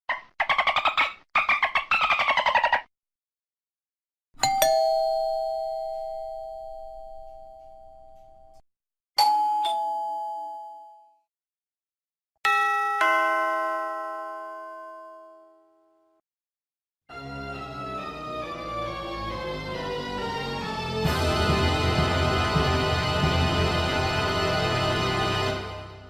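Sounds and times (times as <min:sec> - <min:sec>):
doorbell ding-dong chimes: 0:04.4 - 0:08.6, 0:09.2 - 0:11.2, 0:12.5 - 0:16.0.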